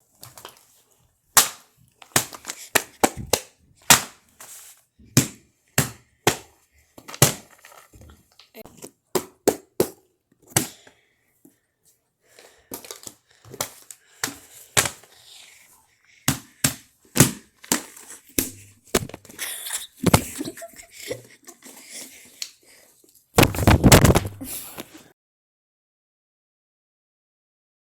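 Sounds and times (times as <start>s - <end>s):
handling noise: 18.3s - 20.8s, 23.4s - 25.0s.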